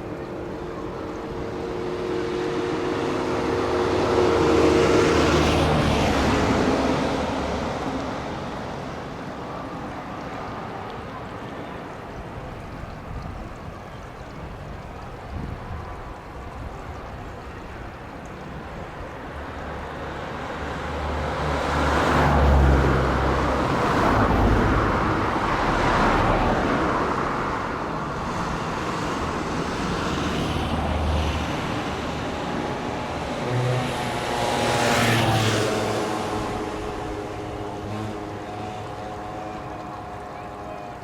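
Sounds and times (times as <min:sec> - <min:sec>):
jet engines passing close: 0:00.0 - 0:13.8, 0:15.0 - 0:41.0.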